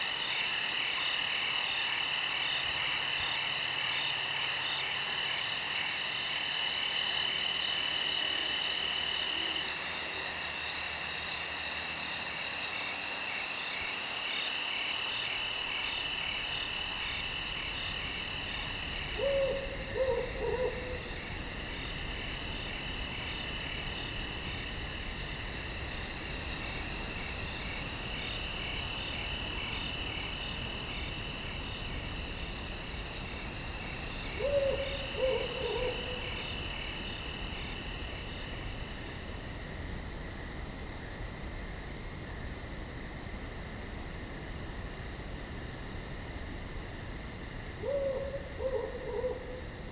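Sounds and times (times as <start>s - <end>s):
insects trilling: 0.0s - 49.9s
owl hooting: 19.2s - 21.1s, 34.4s - 36.3s, 47.8s - 49.6s.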